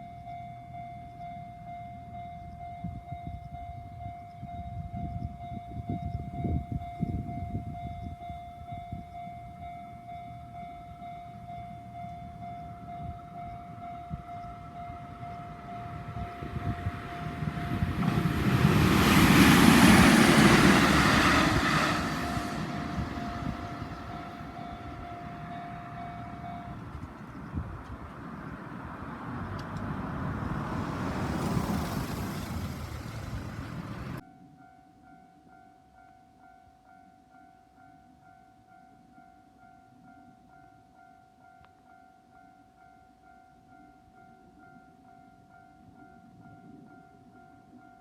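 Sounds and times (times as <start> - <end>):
level crossing warning bell: 0.0 - 29.4, 30.0 - 48.0
train passing loudly: 5.5 - 34.2
quiet passing rumble: 13.2 - 34.2.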